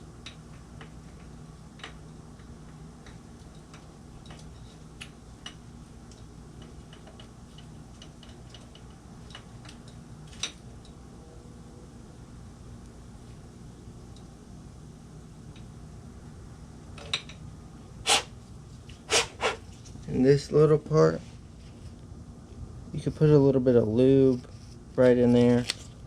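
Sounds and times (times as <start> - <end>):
steady low hum: 0.0 - 26.0
small parts clicking and tapping: 0.2 - 11.0.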